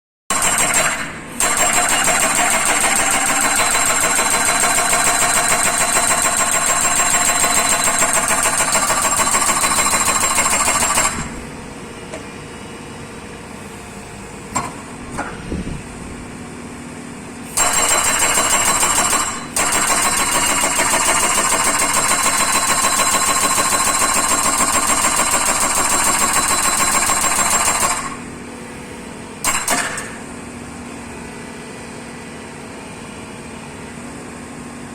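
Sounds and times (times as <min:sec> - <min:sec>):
hydraulic breaker hammering: 0:00.3 - 0:11.5, 0:17.5 - 0:28.4, 0:29.4 - 0:30.4.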